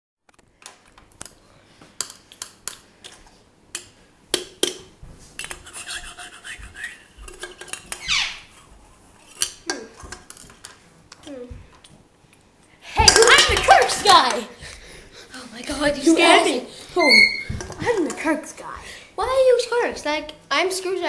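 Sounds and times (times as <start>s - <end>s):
hard objects clinking and clattering: 13.0s - 14.4s.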